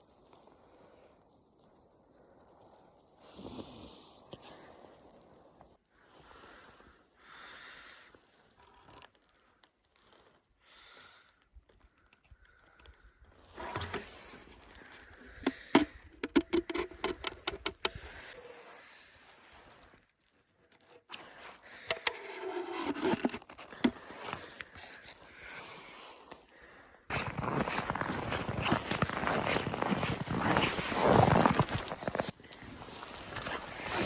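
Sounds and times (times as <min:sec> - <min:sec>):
rustling and scraping: 0:13.5 - 0:18.4, 0:20.7 - 0:25.2, 0:27.1 - 0:34.0.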